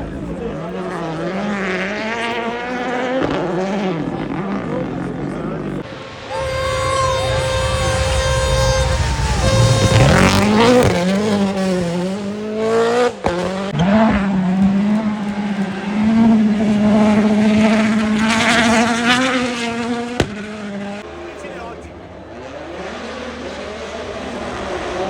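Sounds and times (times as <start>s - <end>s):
car engine accelerating: 0.0s - 25.0s.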